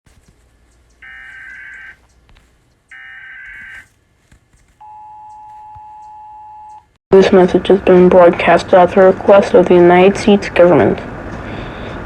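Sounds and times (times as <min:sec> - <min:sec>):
steady attention tone: 0:00.6 - 0:03.9, 0:04.8 - 0:10.9
digital data bursts: 0:01.0 - 0:02.0.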